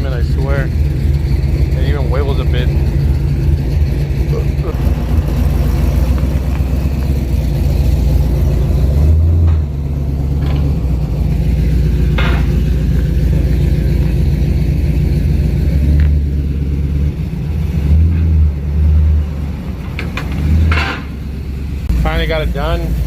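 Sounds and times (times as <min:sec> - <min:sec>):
truck engine rumbling: 0:00.0 - 0:23.0
short clanks: 0:09.3 - 0:11.0, 0:12.0 - 0:13.2, 0:19.8 - 0:21.3.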